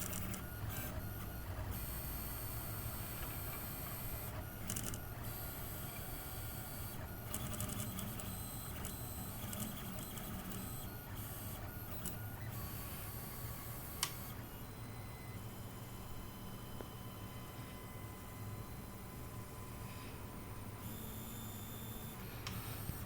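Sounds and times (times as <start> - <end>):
stepper motors whining and buzzing: 0.0 - 17.2.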